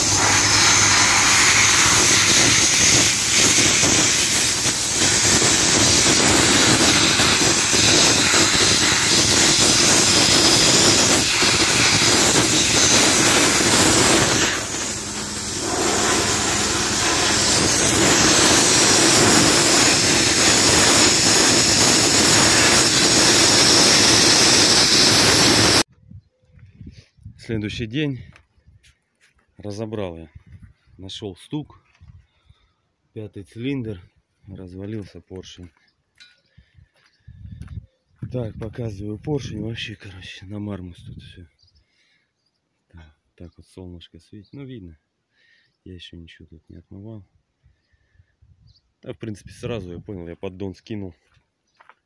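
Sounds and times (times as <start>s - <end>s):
sandblaster hissing: 0.0s - 25.9s.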